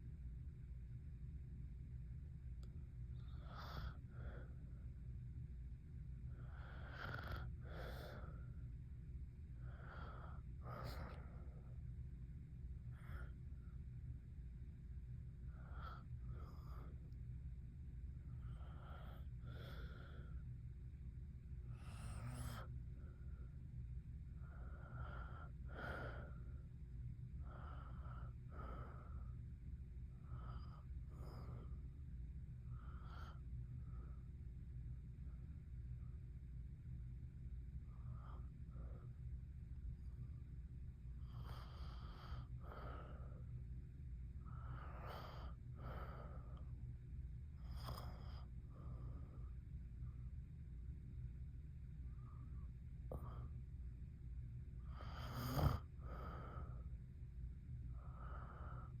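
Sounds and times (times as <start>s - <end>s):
woman breathing with light snoring: 6.4s - 8.6s, 9.6s - 11.8s, 44.4s - 46.7s, 54.8s - 57.0s, 57.9s - 59.0s.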